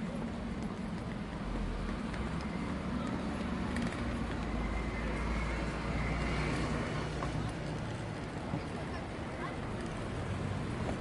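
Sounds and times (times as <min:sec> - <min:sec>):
passing vehicle engine rumble: 0:00.0 - 0:11.0
traffic noise: 0:00.0 - 0:11.0
people's voices: 0:07.1 - 0:11.0.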